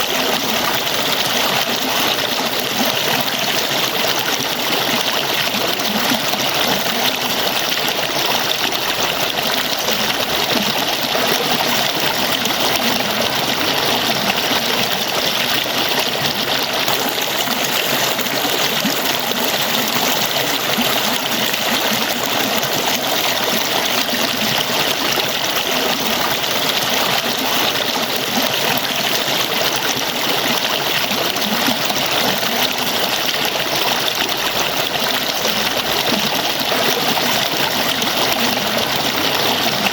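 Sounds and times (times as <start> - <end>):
water falling and splashing: 29.7 - 39.9.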